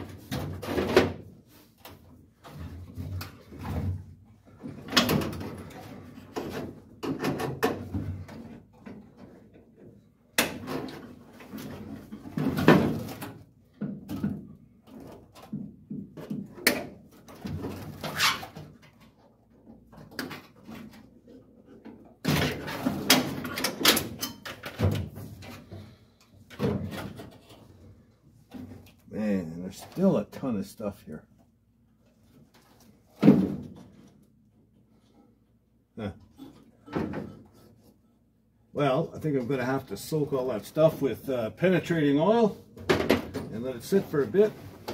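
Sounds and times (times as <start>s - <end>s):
clunks and scrapes of hand work: 0.0s - 30.5s, 36.1s - 38.2s, 42.0s - 44.9s.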